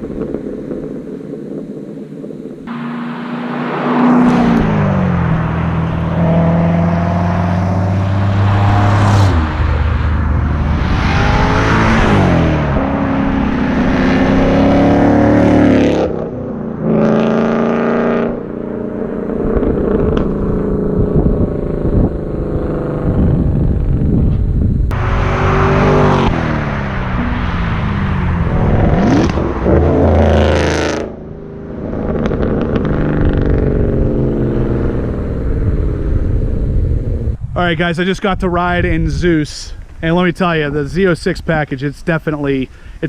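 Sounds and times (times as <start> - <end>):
car engine revving hard: 2.7 - 23.6, 24.9 - 37.3.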